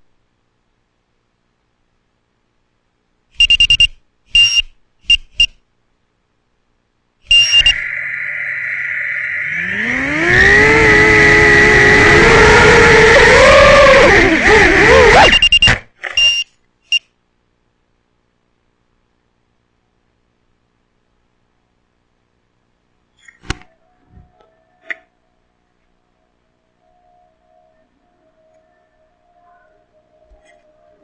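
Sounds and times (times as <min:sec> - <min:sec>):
short high electronic beeps: 0:03.4 - 0:05.6, 0:07.3 - 0:10.5, 0:15.2 - 0:17.0
drone motors whining: 0:07.3 - 0:15.6.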